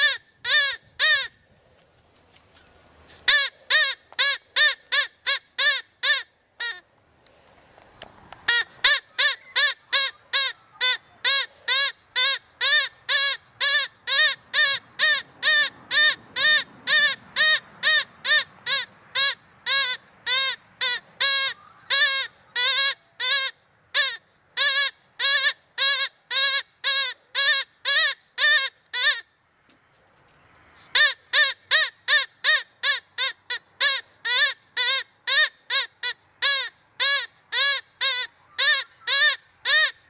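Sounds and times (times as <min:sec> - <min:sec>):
rabbit squealing call: 0:00.0 - 0:01.4, 0:08.5 - 0:29.2, 0:30.9 - 0:40.0.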